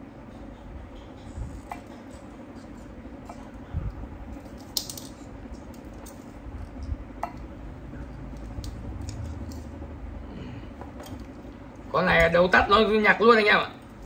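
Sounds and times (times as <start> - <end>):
low steady hum: 0.0 - 14.0
small metal parts rattling: 4.4 - 5.2.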